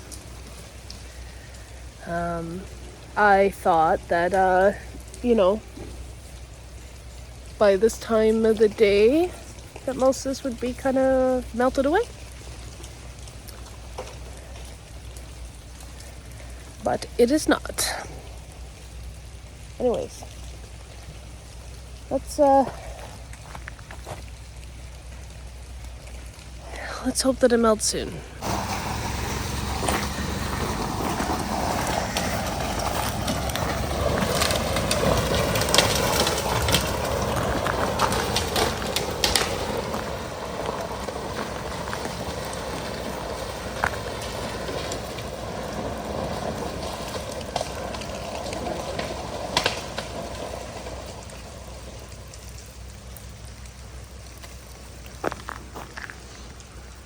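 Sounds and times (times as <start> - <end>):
ice crust crunching: 27.9 - 57.0
sharp ice cracks: 28.4 - 52.7.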